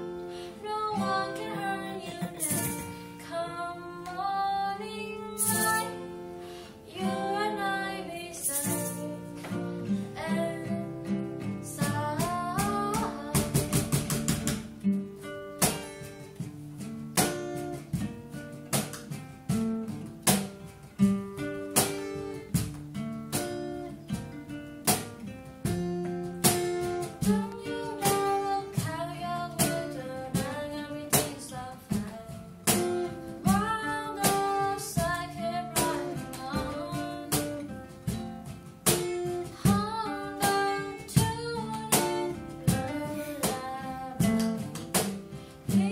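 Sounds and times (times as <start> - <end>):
acoustic guitar plucked and strummed: 0.0 - 45.9
person singing: 0.5 - 6.1, 6.8 - 9.4, 10.0 - 11.1, 11.7 - 14.3, 27.2 - 32.4, 33.4 - 37.7, 39.6 - 44.7.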